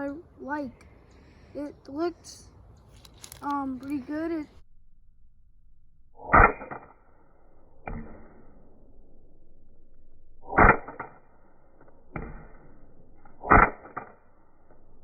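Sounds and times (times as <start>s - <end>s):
air pistol pops: 13.4s - 14.1s.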